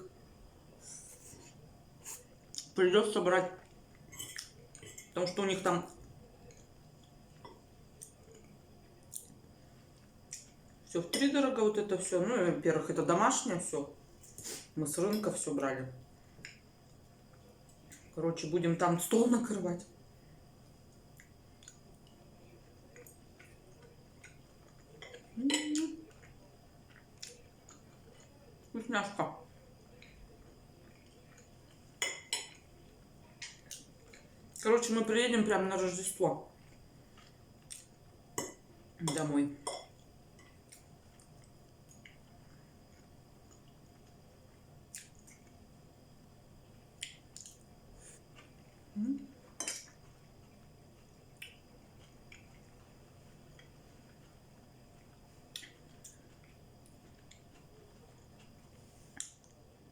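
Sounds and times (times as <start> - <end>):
chewing mouth smacks: 44.9 - 45.5, 47.0 - 47.6
person humming: 49.0 - 49.3.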